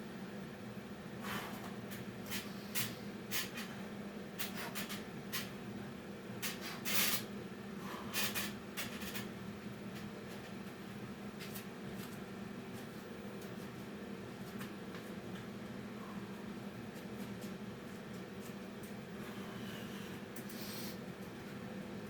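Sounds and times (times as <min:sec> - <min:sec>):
steady low hum: 0:00.0 - 0:22.0
person breathing: 0:19.2 - 0:21.0.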